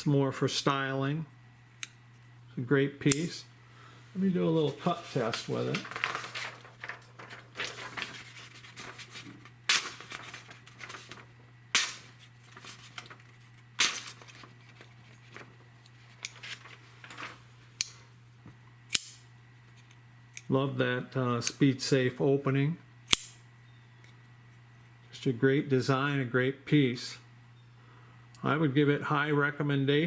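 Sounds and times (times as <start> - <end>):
knife blade snapping open clicks: 18.9 - 19.2, 23.1 - 23.4.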